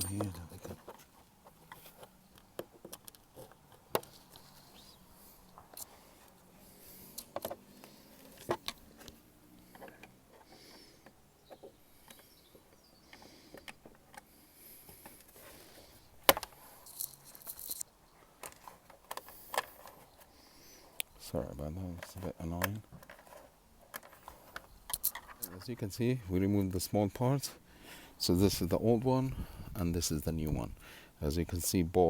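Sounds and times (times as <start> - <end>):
metal parts and tools clicking: 0.0 - 0.7, 16.4 - 20.0, 23.0 - 25.6.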